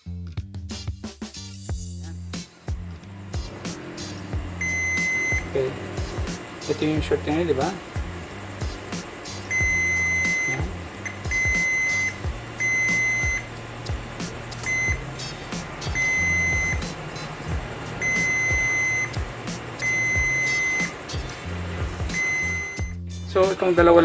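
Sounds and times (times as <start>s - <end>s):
multimeter continuity beeps: 4.6s - 23.0s
probe clicks: 7.6s - 21.4s.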